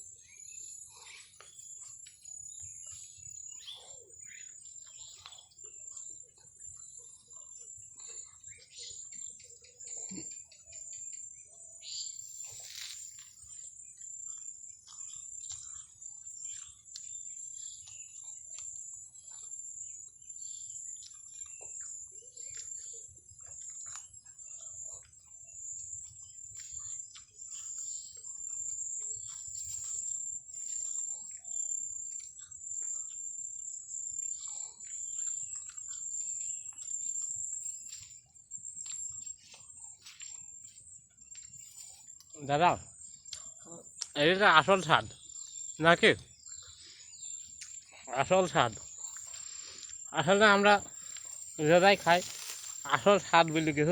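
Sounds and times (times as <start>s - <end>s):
high-pitched insect drone: 48.1s - 53.9s.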